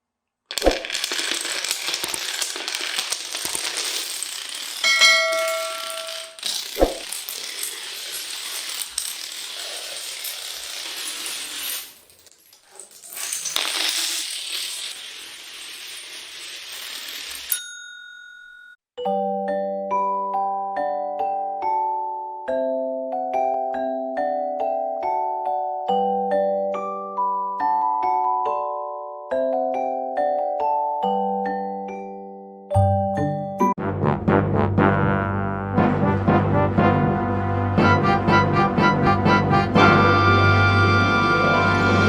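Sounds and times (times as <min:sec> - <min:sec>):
metallic jingling and clattering: 0:01.0 - 0:17.7
ringing ding: 0:04.8 - 0:06.4, 0:17.5 - 0:18.8
mallet percussion music: 0:32.7 - 0:33.8.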